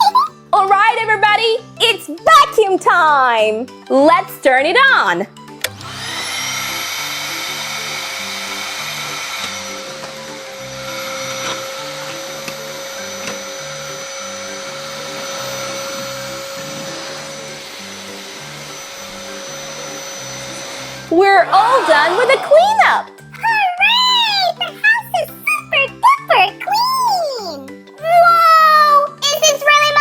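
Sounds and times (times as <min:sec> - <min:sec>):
toy vacuum cleaner whine: 0:05.6 - 0:22.6.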